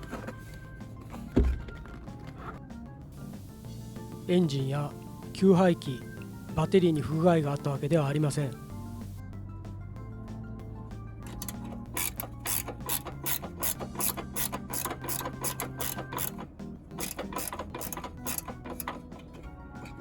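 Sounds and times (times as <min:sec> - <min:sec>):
quiet background music: 0:00.0 - 0:20.0
ratchet wrench clicking: 0:11.3 - 0:19.4.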